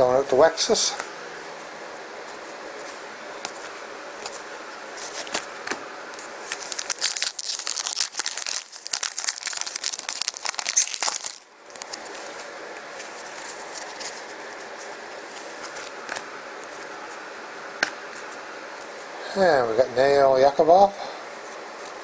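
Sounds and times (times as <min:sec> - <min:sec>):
steady low hum: 0:00.0 - 0:22.0
foil wrapper crackling: 0:06.2 - 0:12.4.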